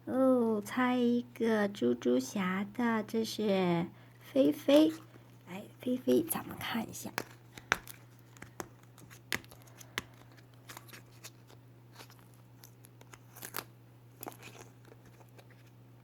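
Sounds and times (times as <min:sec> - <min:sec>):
faint low hum: 0:00.0 - 0:16.0
plastic packaging crinkling and snapping: 0:07.0 - 0:15.8.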